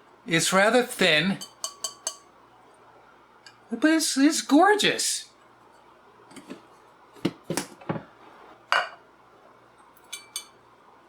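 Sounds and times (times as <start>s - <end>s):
glass clinks ringing: 1.4s - 2.3s.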